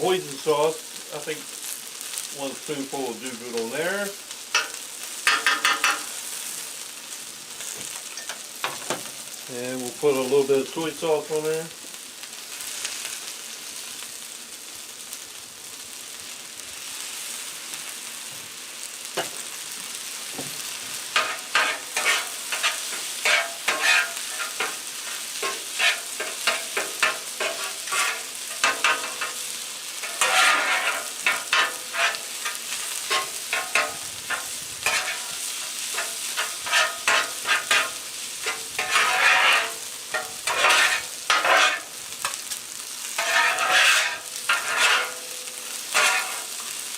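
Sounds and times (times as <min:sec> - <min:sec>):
rice sizzling on griddle: 0:00.0 - 0:46.9
metal spatulas scraping steel: 0:21.2 - 0:42.4, 0:43.2 - 0:45.3, 0:45.9 - 0:46.7.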